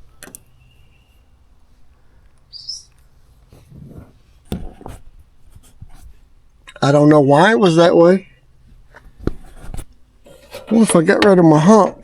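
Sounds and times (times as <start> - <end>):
high animal chirp: 2.5 - 2.9.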